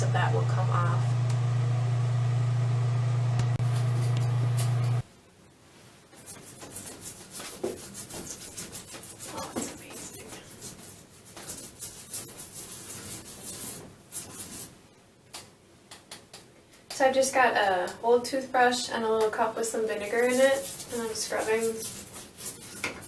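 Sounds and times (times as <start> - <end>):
toothbrush scrubbing shower head: 6.3 - 14.6, 19.9 - 23.0.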